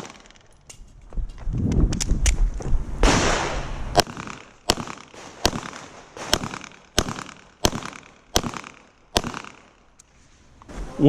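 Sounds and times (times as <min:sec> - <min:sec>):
pistol shots: 0:00.0 - 0:00.4, 0:03.0 - 0:09.8.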